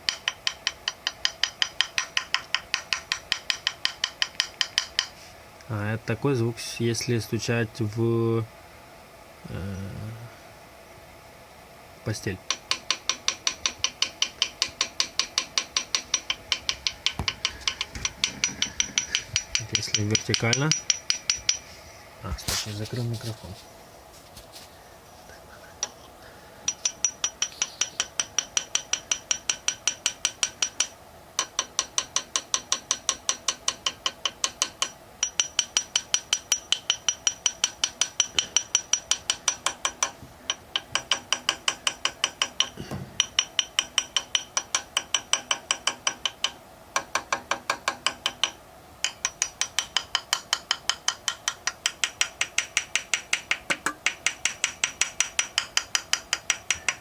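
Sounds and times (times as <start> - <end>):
rapid metallic tapping: 0.0 - 5.2, 12.5 - 21.7, 26.7 - 57.0.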